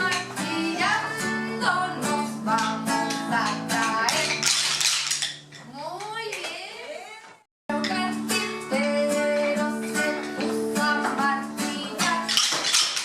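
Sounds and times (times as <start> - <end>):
children singing: 0.0 - 4.5
acoustic guitar: 0.0 - 5.6, 7.7 - 13.0.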